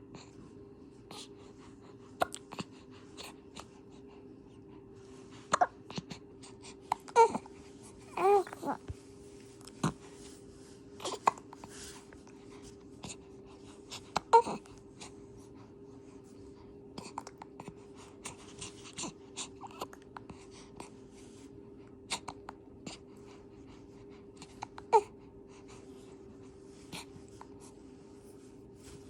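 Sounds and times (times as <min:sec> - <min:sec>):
steady hum: 0:00.0 - 0:29.0.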